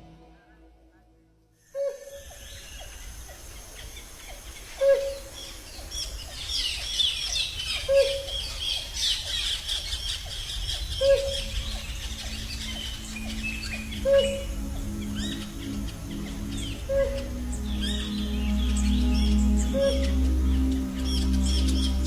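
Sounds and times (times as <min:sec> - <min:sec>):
low forest hum: 0:00.0 - 0:22.0
high bird chirps: 0:01.8 - 0:22.0
low falling bird note: 0:10.8 - 0:22.0.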